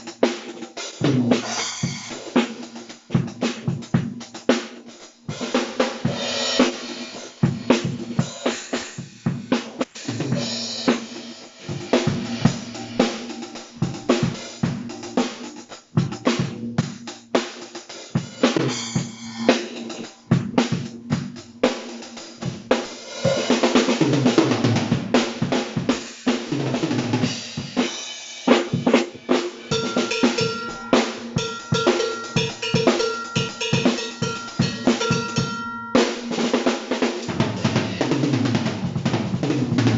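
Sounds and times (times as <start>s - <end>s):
acoustic drum kit playing: 0.0s - 39.9s
cymbal wash: 18.2s - 23.7s, 29.4s - 38.0s.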